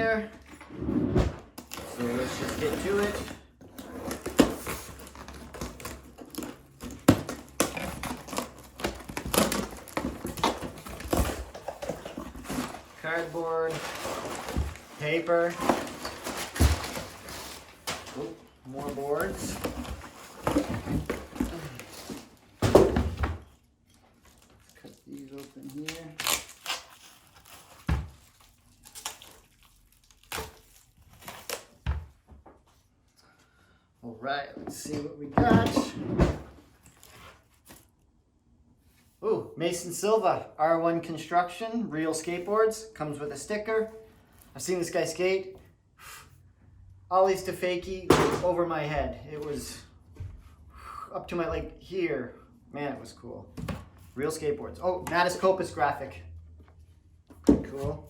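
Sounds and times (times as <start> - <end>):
cardboard crackling and scraping: 0.8 - 23.5
crinkling and tearing of wrap: 24.1 - 31.8.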